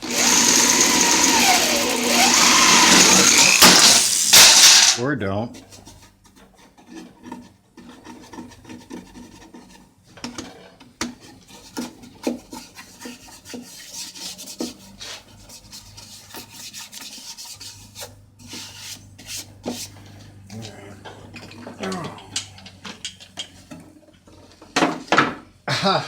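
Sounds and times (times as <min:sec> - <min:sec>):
tool scraping wood: 0:00.0 - 0:20.3.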